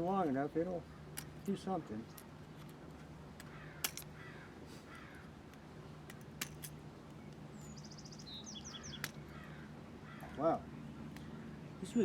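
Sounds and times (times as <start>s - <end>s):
bird chirping: 7.0s - 12.0s.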